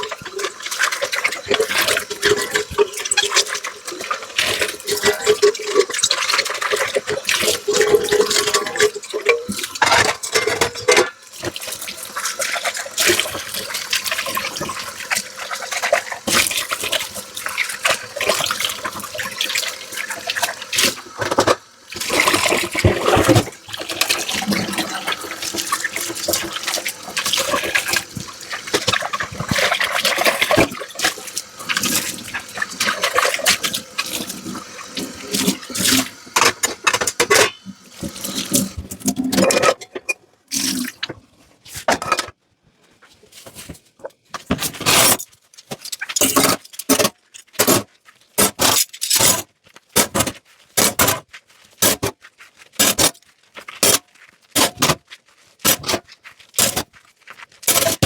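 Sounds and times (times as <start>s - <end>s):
scrubbing a dish: 0.0s - 39.5s, 49.6s - 58.0s
tap water splashing over dishes: 0.0s - 41.2s.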